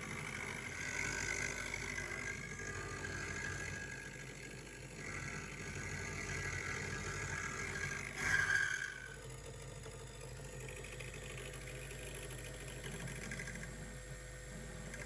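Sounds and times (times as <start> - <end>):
milling machine whine: 0.0 - 15.0.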